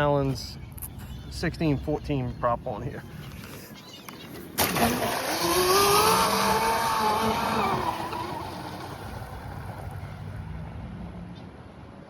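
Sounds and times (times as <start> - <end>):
electric motor whining: 4.6 - 9.9.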